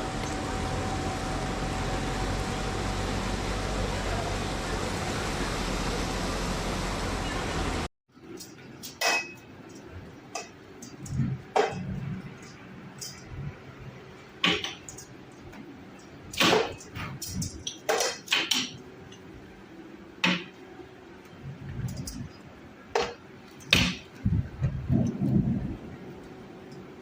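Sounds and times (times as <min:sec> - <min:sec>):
sharp knocks and clinks: 0:08.3 - 0:13.3.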